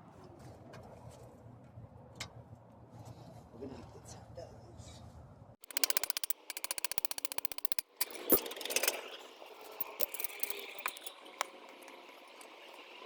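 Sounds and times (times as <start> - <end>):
ratchet wrench clicking: 5.6 - 9.0, 9.6 - 12.8
metal clank: 5.6 - 12.7
metal tools clinking: 5.6 - 13.0.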